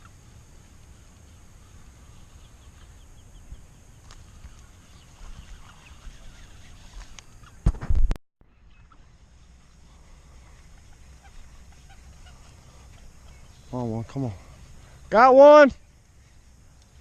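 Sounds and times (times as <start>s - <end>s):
faint bird chirps: 1.6s - 7.6s, 8.4s - 15.0s
low marsh rumble: 8.5s - 15.1s
light ticks: 16.0s - 17.0s.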